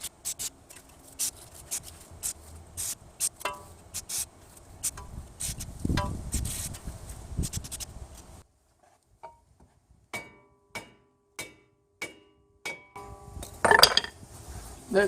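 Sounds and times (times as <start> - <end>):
hammer striking metal: 3.4 - 3.7, 10.1 - 14.1.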